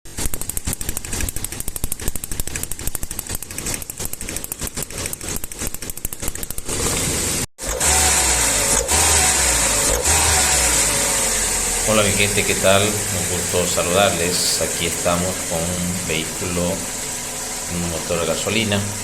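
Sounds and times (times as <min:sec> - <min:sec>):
engine tapping clatter: 0:00.1 - 0:19.0
engine idling unevenly: 0:07.8 - 0:19.0.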